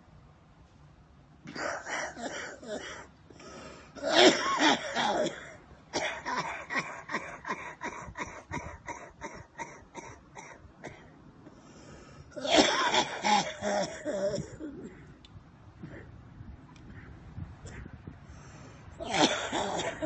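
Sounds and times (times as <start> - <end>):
man coughing: 1.5 - 3.0, 4.0 - 11.0, 12.4 - 15.0, 19.0 - 20.0.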